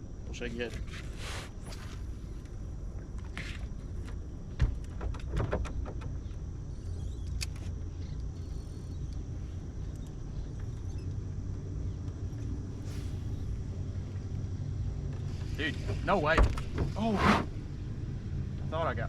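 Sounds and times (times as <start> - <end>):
steady low rumble: 7.8 - 16.0, 17.5 - 19.0.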